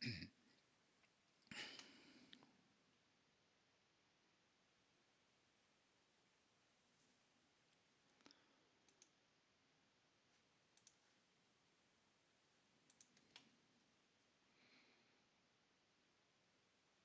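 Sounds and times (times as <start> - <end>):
computer mouse clicks: 8.1 - 9.2, 10.7 - 11.2, 12.8 - 13.6.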